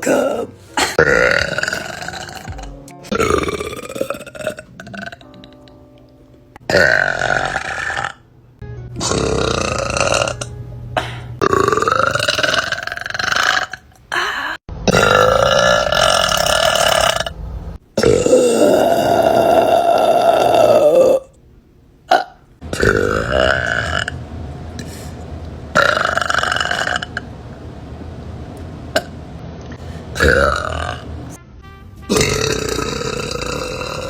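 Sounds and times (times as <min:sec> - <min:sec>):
faint background music: 0:00.0 - 0:07.8, 0:30.2 - 0:34.0
girls burping loudly: 0:32.1 - 0:34.0.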